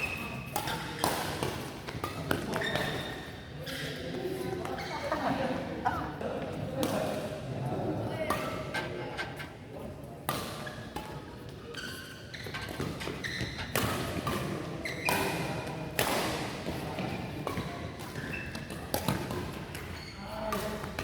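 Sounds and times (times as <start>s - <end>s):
racquets hitting shuttlecock: 0.0s - 3.3s, 10.2s - 21.0s
shoes squeaking on court: 0.0s - 5.3s, 10.5s - 15.8s, 17.0s - 20.8s.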